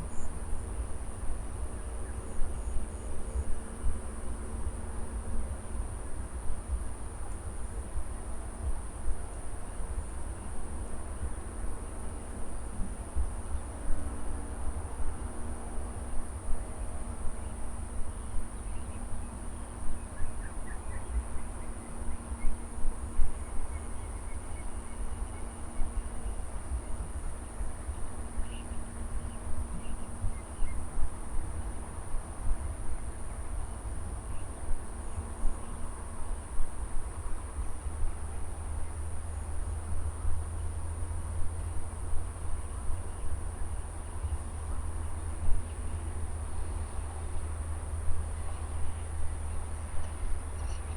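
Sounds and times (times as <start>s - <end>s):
low uneven rumble: 0.0s - 50.9s
faint bird chirps: 49.5s - 50.9s.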